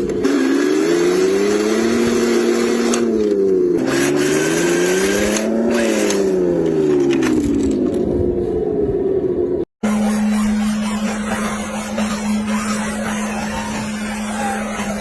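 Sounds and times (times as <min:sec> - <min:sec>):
hiss while speeding up: 0:09.8 - 0:15.0
rc car motor whining: 0:09.8 - 0:15.0.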